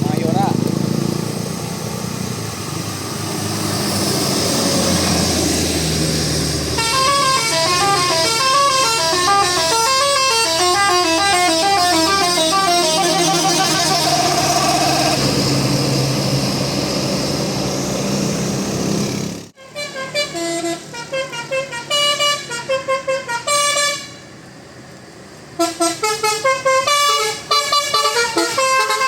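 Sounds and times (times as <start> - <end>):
bus horn playing a melody: 6.7 - 15.2, 19.6 - 24.2, 25.6 - 29.0.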